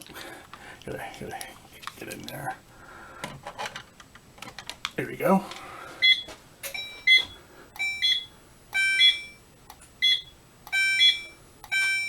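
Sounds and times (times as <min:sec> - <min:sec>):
long steady alarm beep: 0:06.0 - 0:12.0.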